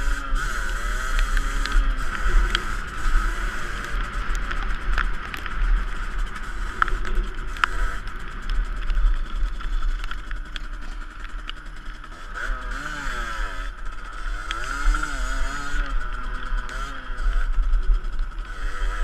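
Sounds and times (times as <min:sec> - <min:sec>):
two-stroke dirt bike engine revving: 0:00.0 - 0:19.0
wind rumble on microphone: 0:00.0 - 0:19.0
sharp clicks: 0:00.1 - 0:12.5.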